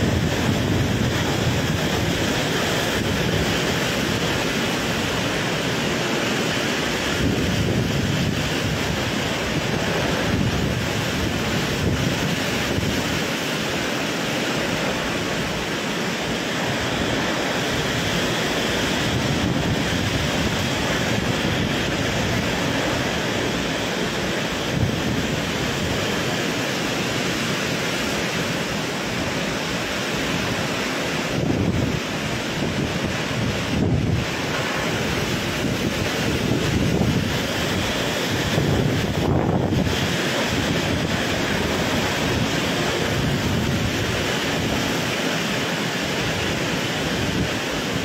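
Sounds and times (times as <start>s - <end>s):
torrential rain: 0.0s - 48.0s
wind buffeting microphone: 0.0s - 48.0s
wind howling: 0.0s - 48.0s.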